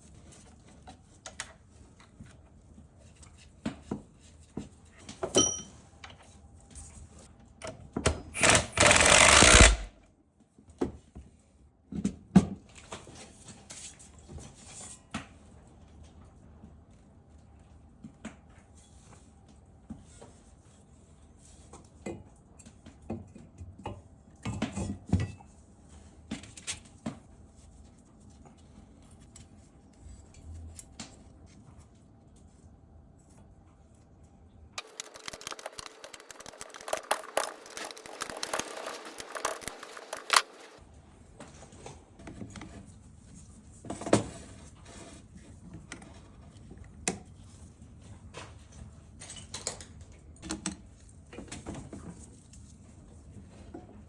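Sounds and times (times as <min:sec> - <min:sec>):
rapid clatter: 0:08.4 - 0:09.9, 0:34.8 - 0:40.8.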